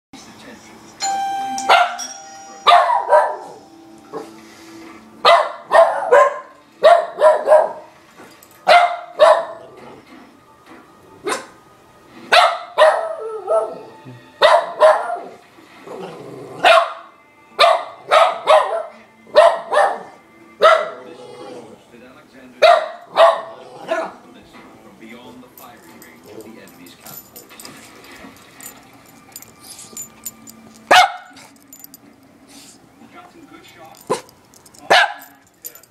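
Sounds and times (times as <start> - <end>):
dog barking: 1.7 - 2.0, 2.7 - 3.6, 5.2 - 7.9, 8.6 - 9.8, 11.2 - 11.6, 12.3 - 15.4, 16.6 - 21.1, 22.6 - 24.2, 30.9 - 31.6, 34.9 - 35.4.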